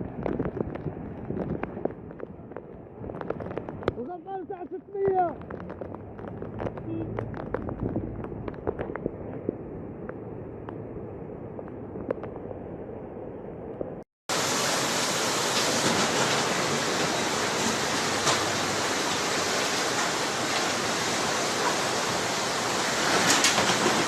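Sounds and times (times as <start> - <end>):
muffled water noise: 4.8 - 16.0
rushing floodwater: 14.3 - 24.0.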